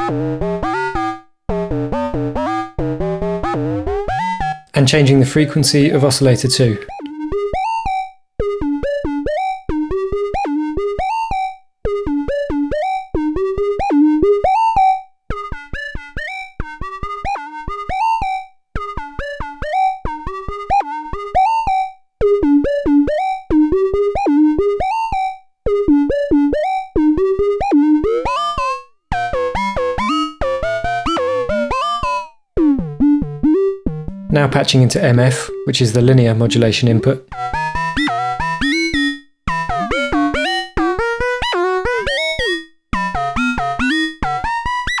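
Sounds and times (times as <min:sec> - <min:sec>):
short synth notes sequence: 0:37.3 - 0:44.5.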